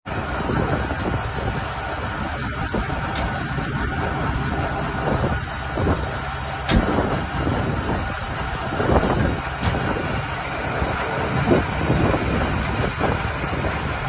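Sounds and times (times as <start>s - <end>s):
heavy diesel engine running rough: 0.0s - 14.0s.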